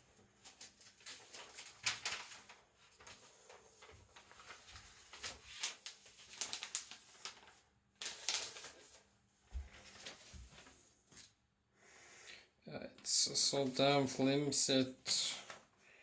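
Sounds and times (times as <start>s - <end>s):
paper rustling and crinkling: 0.0s - 11.4s, 15.1s - 15.8s.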